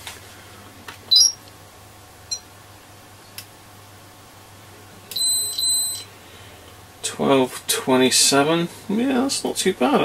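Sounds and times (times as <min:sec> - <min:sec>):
high-pitched meter beep: 0:01.1 - 0:01.4, 0:05.2 - 0:06.1.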